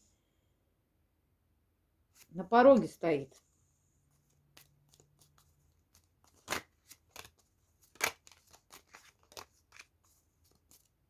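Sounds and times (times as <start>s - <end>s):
cards being handled: 4.1s - 11.0s.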